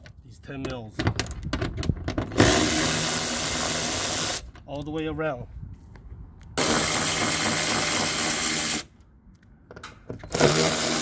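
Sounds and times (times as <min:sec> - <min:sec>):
power drill running a socket: 0:06.6 - 0:08.9, 0:10.3 - 0:11.0.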